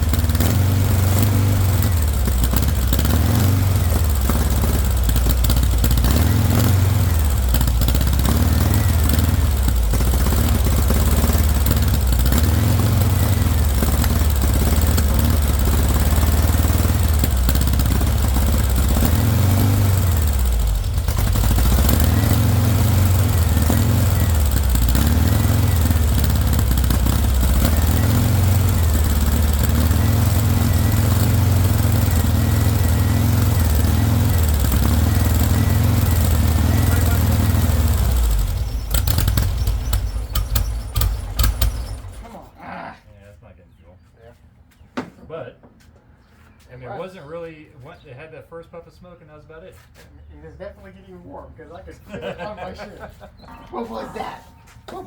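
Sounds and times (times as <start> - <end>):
loud car engine revving: 0.0 - 42.3.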